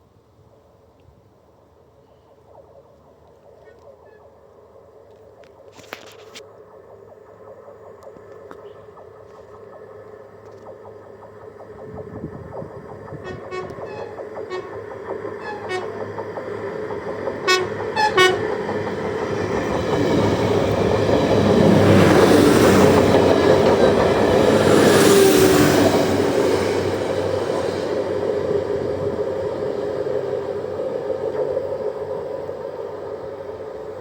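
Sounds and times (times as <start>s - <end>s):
train passing: 0.2s - 34.0s
train horn toots: 13.2s - 16.1s, 17.4s - 18.6s.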